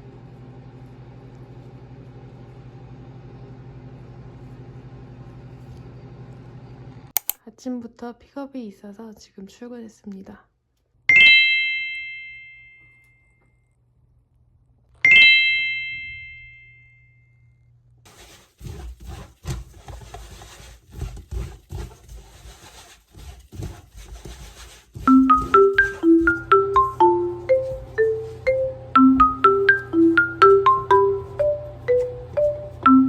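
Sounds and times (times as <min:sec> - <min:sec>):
bell-like chime ringing: 0:15.1 - 0:17.3, 0:25.1 - 0:33.0
marimba-like melody: 0:25.1 - 0:33.0.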